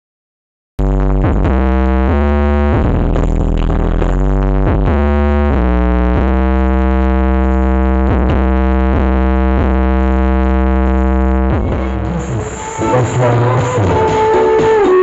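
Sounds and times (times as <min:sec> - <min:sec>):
electronic dance music: 0:00.8 - 0:15.0.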